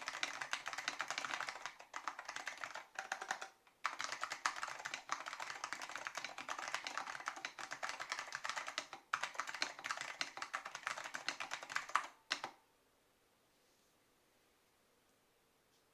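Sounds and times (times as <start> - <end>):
rapid keyboard typing: 0.0 - 12.6.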